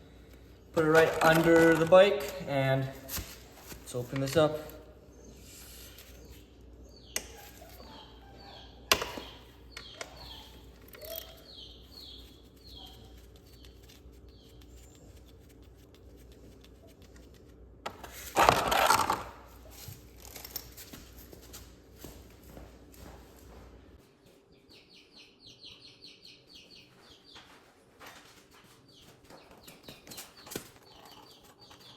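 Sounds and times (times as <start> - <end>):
birds chirping: 3.7 - 15.6, 24.2 - 28.0, 28.8 - 31.9.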